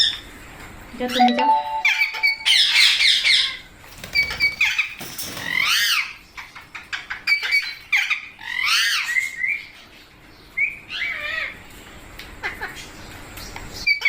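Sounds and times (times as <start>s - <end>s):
parakeets squawking: 2.2s - 9.9s.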